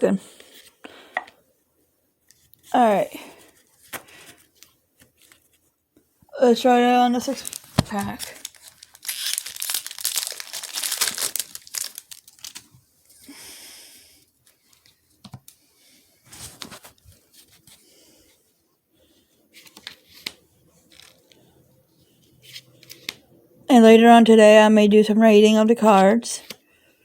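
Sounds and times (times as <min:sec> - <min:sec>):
foil wrapper tearing and crinkling: 0:07.1 - 0:12.8
soft rustles and clicks: 0:16.2 - 0:17.8.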